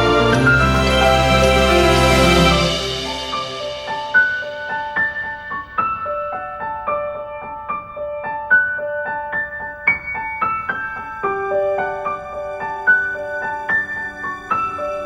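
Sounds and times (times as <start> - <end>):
gentle piano melody: 0.0 - 15.0.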